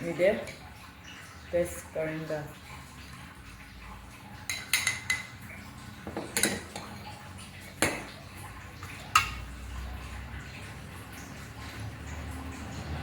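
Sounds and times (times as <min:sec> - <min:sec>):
cutlery clinking on a plate: 0:04.5 - 0:05.4, 0:06.1 - 0:07.0.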